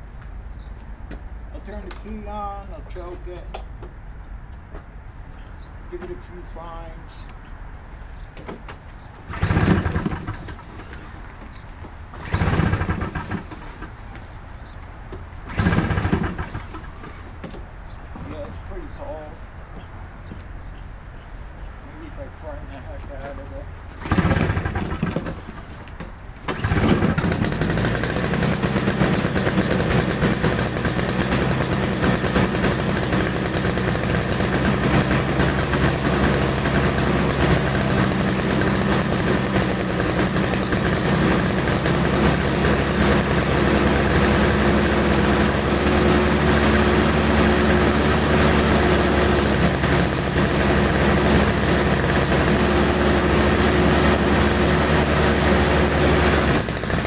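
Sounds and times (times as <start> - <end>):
small gas engine starting and running: 9.2 - 14.4, 15.4 - 17.6, 23.9 - 57.0.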